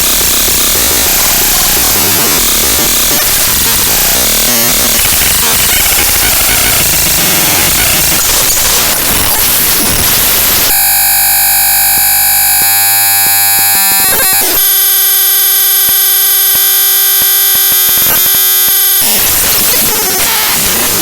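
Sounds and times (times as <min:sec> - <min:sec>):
buzzing drone of fixed tones: 0:00.0 - 0:21.0
glitchy stutter: 0:00.0 - 0:21.0
harsh loud static: 0:00.0 - 0:21.0.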